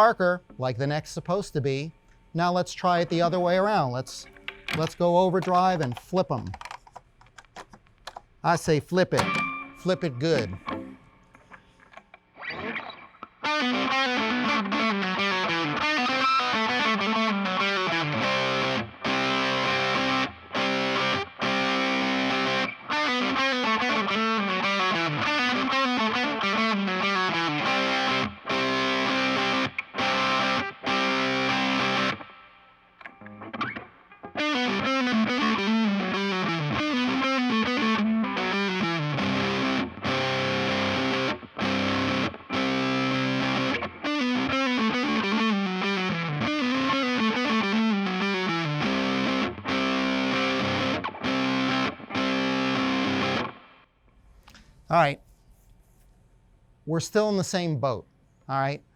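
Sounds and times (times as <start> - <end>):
distorted electric guitar: 9.1 - 11.3, 11.9 - 53.9.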